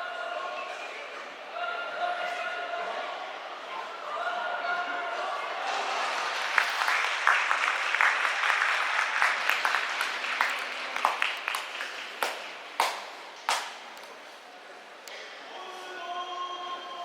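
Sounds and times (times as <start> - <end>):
audience applauding: 5.7 - 14.0.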